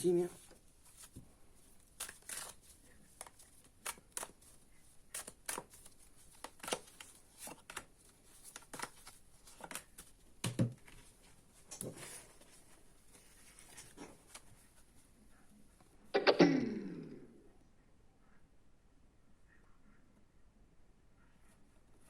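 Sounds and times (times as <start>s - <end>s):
cards snapping and rustling: 1.8s - 11.0s.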